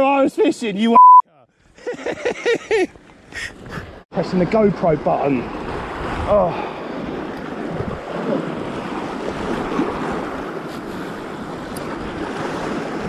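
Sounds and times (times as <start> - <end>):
wind on microphone: 5.4 - 13.0
waves washing against rocks: 6.9 - 13.0.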